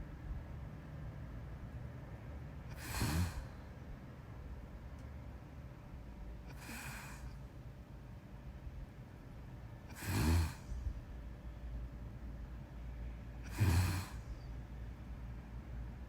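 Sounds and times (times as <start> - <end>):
person snoring: 2.7 - 3.5, 6.5 - 7.3, 9.9 - 10.7, 13.5 - 14.3
breathy exhale: 2.7 - 3.6, 6.5 - 7.4, 9.9 - 10.9, 13.5 - 14.5.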